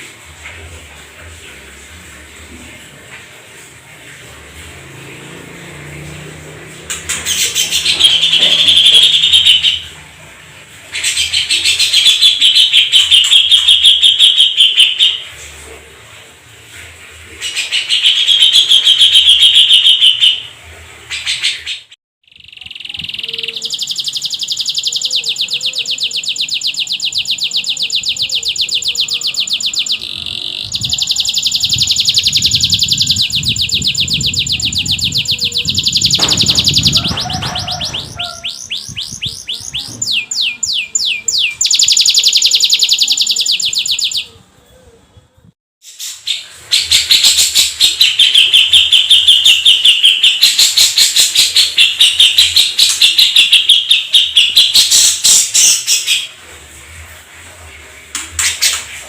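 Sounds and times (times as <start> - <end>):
canary singing trills: 6.8 - 10.0, 10.9 - 15.3, 17.4 - 20.5, 21.1 - 56.4.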